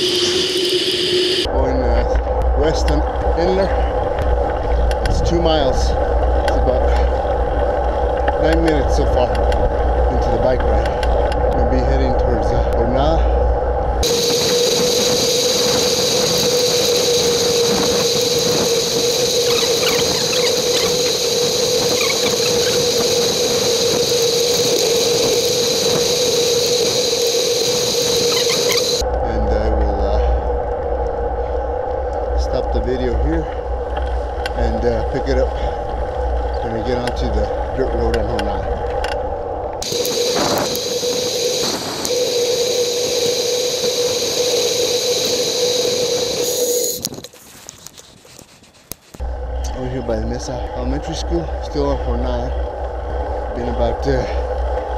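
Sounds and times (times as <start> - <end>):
high steady whine: 0.0 - 48.0, 49.1 - 54.9
constant low hum: 0.0 - 54.9
wind and road noise: 0.0 - 54.9
hiss: 14.0 - 29.0, 39.8 - 47.1.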